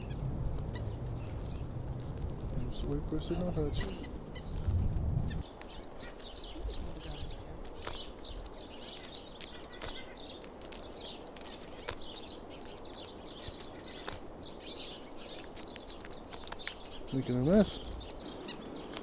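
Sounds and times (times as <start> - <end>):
small songbirds chirping: 0.0 - 19.0
sharp clicks: 7.6 - 8.3.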